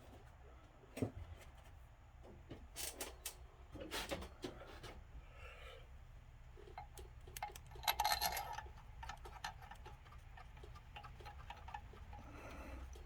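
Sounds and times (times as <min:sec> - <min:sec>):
metal clatter: 0:06.8 - 0:13.0.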